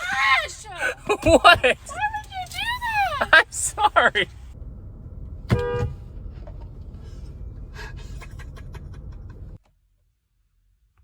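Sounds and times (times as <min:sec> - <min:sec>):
low rumble: 0:04.2 - 0:09.6.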